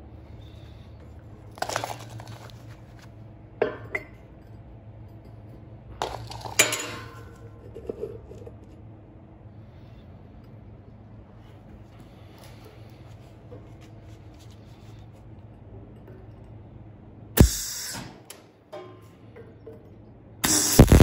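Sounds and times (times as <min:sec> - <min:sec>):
steady low hum: 0:00.0 - 0:21.0
metallic clanks and clinks: 0:06.0 - 0:08.0.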